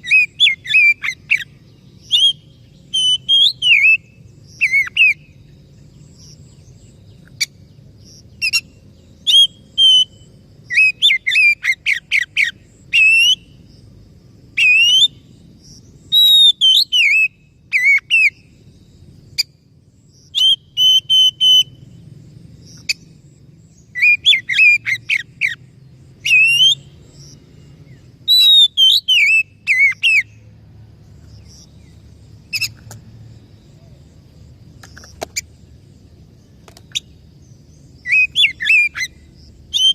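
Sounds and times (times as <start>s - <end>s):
bird singing whistled phrases: 0.0s - 5.4s, 8.4s - 13.6s, 14.6s - 15.2s, 16.1s - 18.5s, 20.3s - 21.8s, 23.8s - 25.6s, 26.2s - 26.9s, 28.3s - 30.4s, 38.0s - 39.9s
faint low hum: 0.0s - 39.9s.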